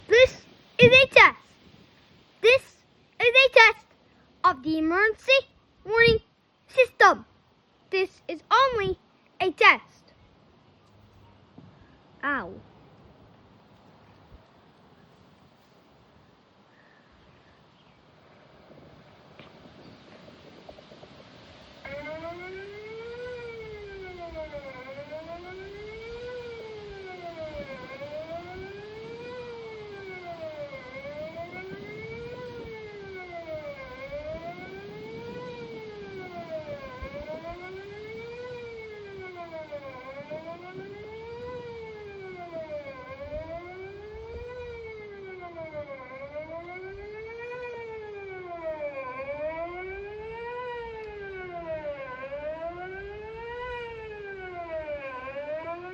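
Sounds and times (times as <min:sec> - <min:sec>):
wailing warning siren: 0:00.0 - 0:01.4, 0:18.7 - 0:55.9.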